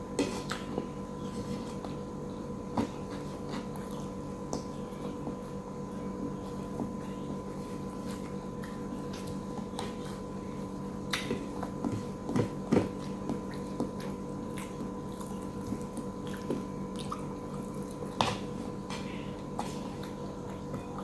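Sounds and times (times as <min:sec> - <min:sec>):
steady electrical hum: 0:00.0 - 0:21.0.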